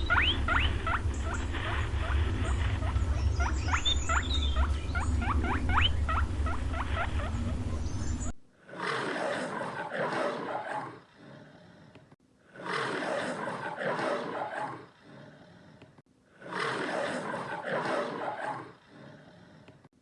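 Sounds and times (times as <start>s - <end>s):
small animals squeaking: 0.0s - 8.3s
low hum: 0.0s - 8.5s
lion roaring: 8.6s - 19.8s.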